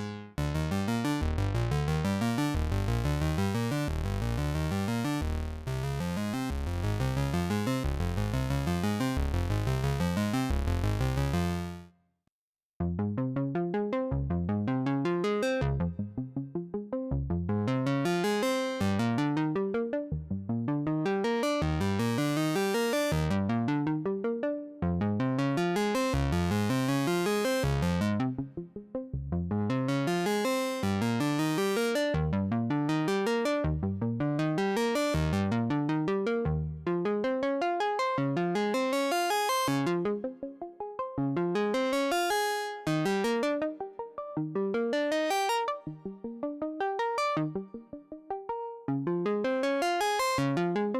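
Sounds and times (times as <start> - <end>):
synthesizer arpeggios: 0.0 - 11.8, 18.0 - 19.8, 21.0 - 24.3, 25.5 - 28.2, 29.9 - 32.2, 32.8 - 33.8, 34.4 - 36.4, 38.0 - 50.8.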